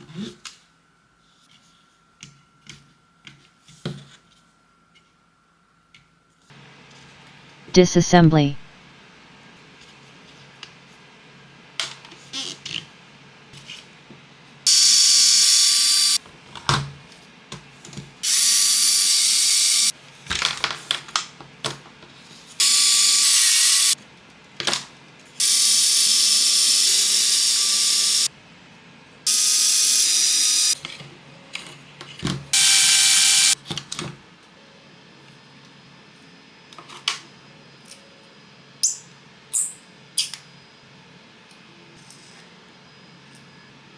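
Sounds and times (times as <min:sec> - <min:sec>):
electric screwdriver whirring: 0:14.7 - 0:16.2, 0:18.2 - 0:19.9, 0:22.6 - 0:24.0, 0:25.4 - 0:28.3, 0:29.3 - 0:30.8, 0:32.6 - 0:33.6.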